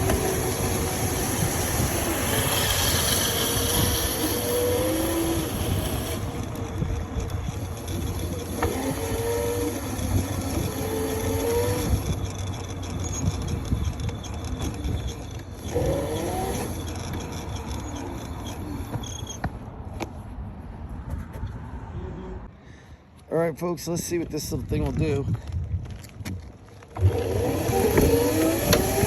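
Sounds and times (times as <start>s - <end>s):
electric motor whine: 0.0s - 19.3s, 26.9s - 29.0s
wind and tyre noise: 0.0s - 29.0s.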